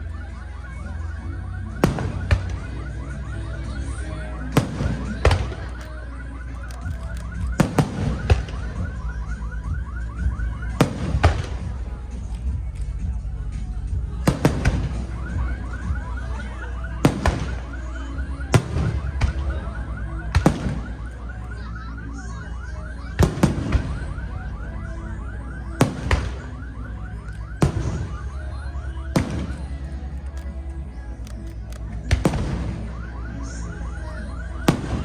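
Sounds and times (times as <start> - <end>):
steady low rumble: 1.0 - 22.0
fireworks bangs: 1.8 - 3.7, 4.4 - 13.2, 13.9 - 21.5, 23.2 - 24.6, 25.3 - 30.5, 31.6 - 33.7, 34.4 - 35.0.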